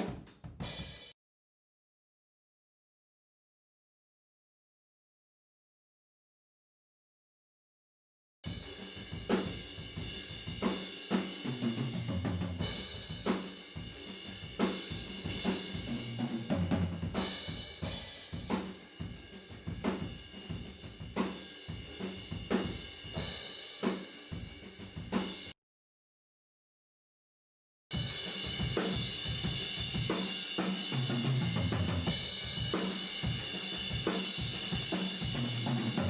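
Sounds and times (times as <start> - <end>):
hi-hat and cymbals: 8.5 - 25.5, 28.0 - 36.0.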